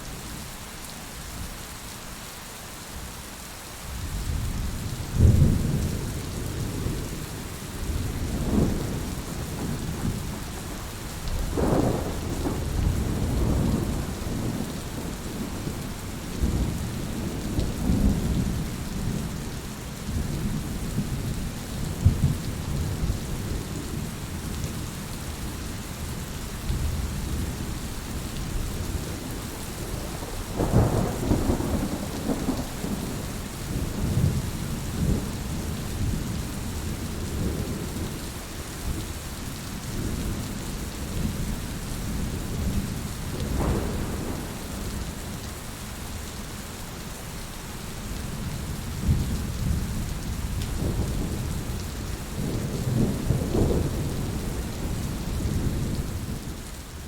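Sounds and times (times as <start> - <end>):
heavy rain falling: 0.0 - 57.0
thunder rumbling: 7.8 - 19.4, 26.7 - 38.0, 42.1 - 45.4, 49.0 - 56.5.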